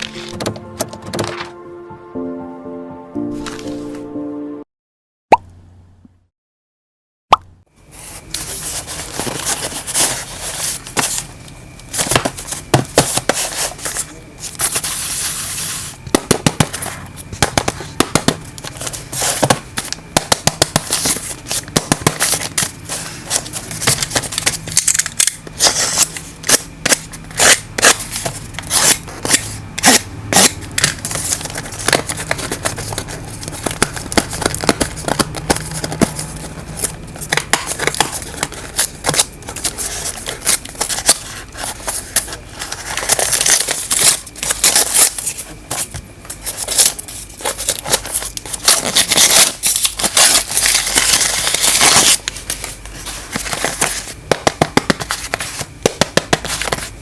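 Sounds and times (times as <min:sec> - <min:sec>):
packaging rustling: 0:08.0 - 0:16.0, 0:27.3 - 0:54.2.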